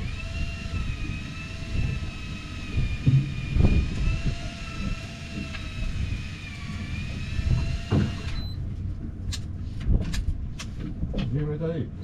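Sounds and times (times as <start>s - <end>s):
motor whine: 0.0s - 8.6s.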